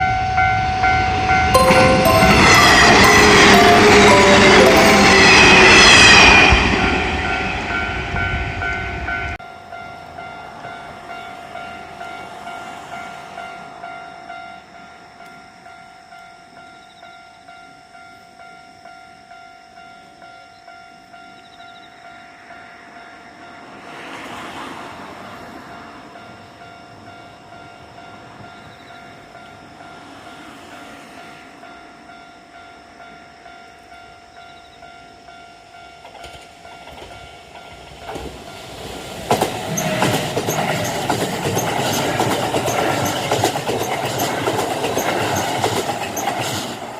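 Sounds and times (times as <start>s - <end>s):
crossing warning bell ringing: 0.0s - 46.9s
passing train: 0.0s - 46.9s
rush of noise: 0.6s - 9.1s.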